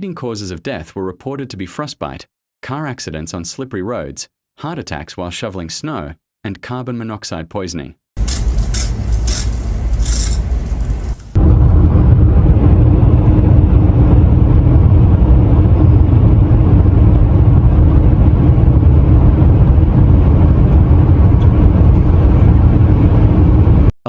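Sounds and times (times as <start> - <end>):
faint hum: 8.2 - 23.9
vehicle engine rumble: 8.2 - 24.0.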